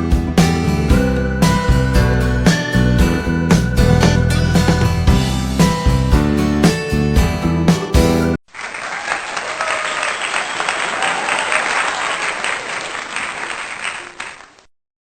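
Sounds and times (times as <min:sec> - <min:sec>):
guitar background music: 0:00.0 - 0:08.4
crowd applauding: 0:08.5 - 0:14.7.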